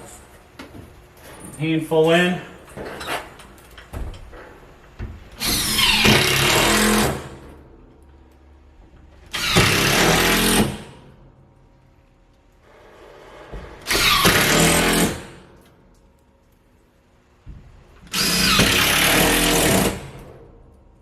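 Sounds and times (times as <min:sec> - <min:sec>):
cordless drill driving screws: 0:05.4 - 0:07.2, 0:09.3 - 0:10.7, 0:13.9 - 0:15.2, 0:18.1 - 0:20.1.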